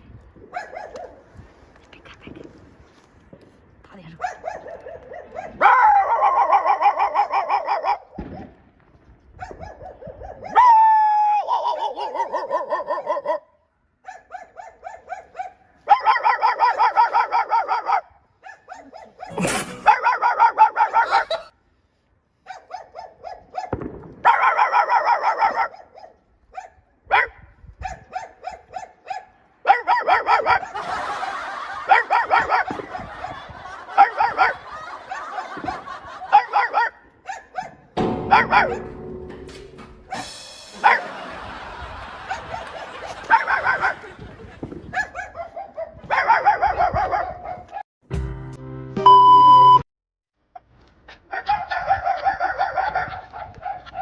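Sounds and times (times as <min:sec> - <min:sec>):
dog barking: 0:00.5 - 0:01.3, 0:04.2 - 0:08.6, 0:09.4 - 0:10.6, 0:11.4 - 0:21.5, 0:22.4 - 0:30.8, 0:31.8 - 0:39.0, 0:40.1 - 0:41.1, 0:42.3 - 0:44.0, 0:44.9 - 0:47.8, 0:51.2 - 0:54.0.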